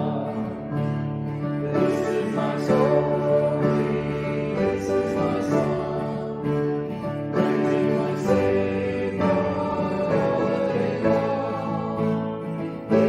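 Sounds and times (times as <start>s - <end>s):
instrumental hymn accompaniment: 0.0s - 13.0s
singing: 7.4s - 13.0s.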